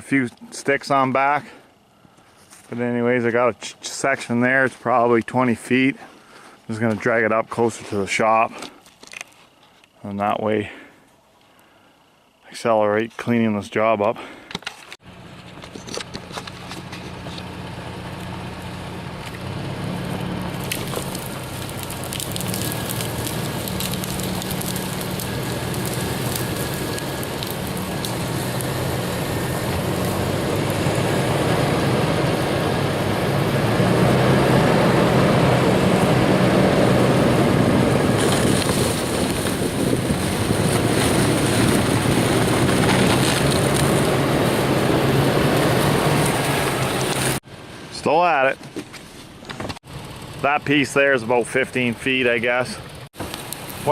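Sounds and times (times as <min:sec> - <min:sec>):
pickup truck engine running: 0:15.0 - 0:47.4, 0:49.8 - 0:53.9
log dragging over ground: 0:15.3 - 0:47.4.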